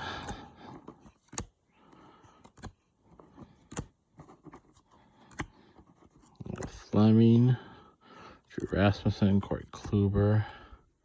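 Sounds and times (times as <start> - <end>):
rustling of trading cards: 0.0 - 7.8, 8.4 - 10.6
cards snapping: 0.1 - 1.6, 2.3 - 2.8, 3.4 - 3.9, 5.2 - 5.6.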